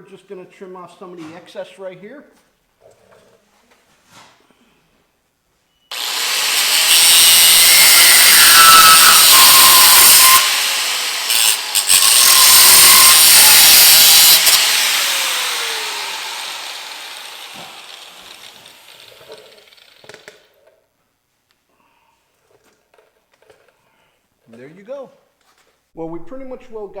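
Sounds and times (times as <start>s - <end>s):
power cutting tool cutting steel: 5.9s - 20.3s.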